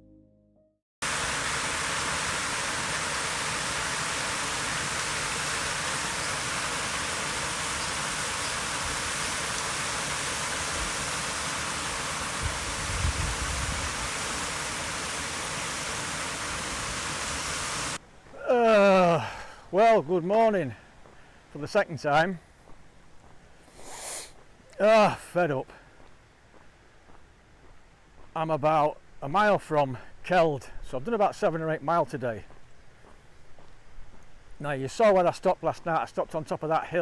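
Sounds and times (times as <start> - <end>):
wind buffeting microphone: 12.3 - 14.3
strong wind rushing: 12.4 - 14.2.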